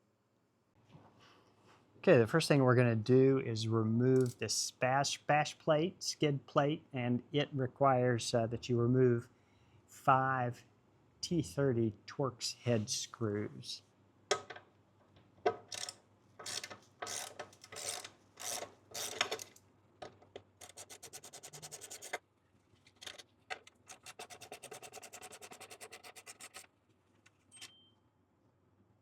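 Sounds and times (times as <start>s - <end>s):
ratchet clicking: 4.2s - 4.4s, 15.7s - 19.6s
ratchet scraping strokes: 15.7s - 19.4s, 20.6s - 22.2s, 23.9s - 26.7s.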